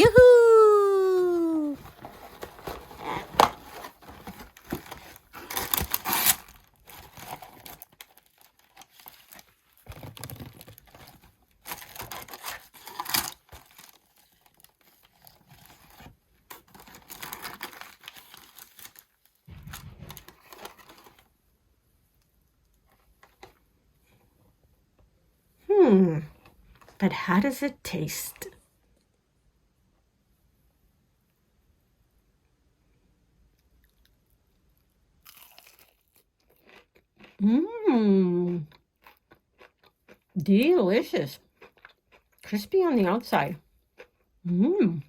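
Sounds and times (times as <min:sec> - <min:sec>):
paper packaging crinkling and tearing: 0:01.6 - 0:21.3
short low thump: 0:19.5 - 0:20.4.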